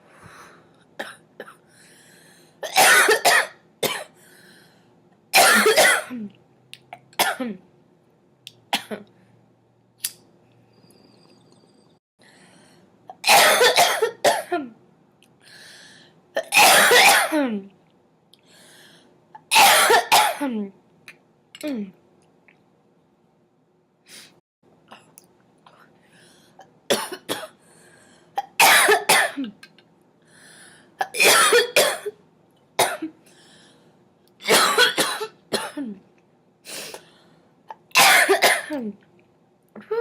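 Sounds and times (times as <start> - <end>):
girl coughing: 2.6 - 4.1, 5.4 - 6.3, 7.2 - 7.6, 13.2 - 14.7, 16.4 - 17.6, 19.4 - 20.6, 26.9 - 27.6, 28.4 - 29.6, 31.0 - 32.2, 32.8 - 33.2, 34.4 - 36.0, 37.7 - 39.0.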